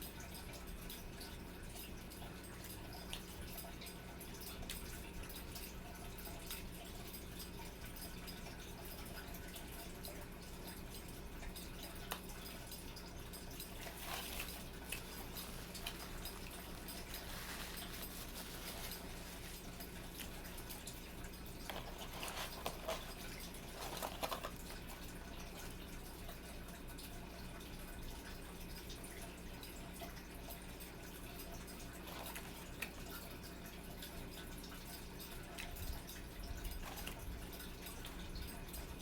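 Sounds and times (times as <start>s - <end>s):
person chewing food: 11.4s - 26.3s, 31.8s - 34.2s, 35.1s - 39.0s
rustling: 13.8s - 20.8s, 21.6s - 24.8s.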